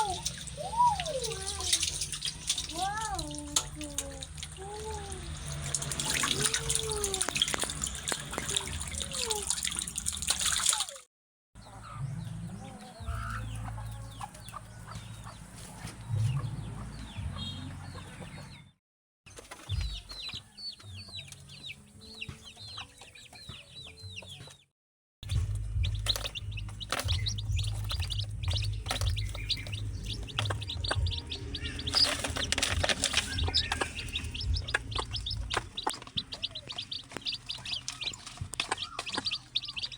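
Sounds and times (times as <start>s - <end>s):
chickens clucking: 0.0s - 9.4s, 11.6s - 18.7s, 25.3s - 39.9s
birds chirping: 0.0s - 9.8s, 11.6s - 24.6s, 25.2s - 39.9s
low rumble: 25.2s - 39.9s.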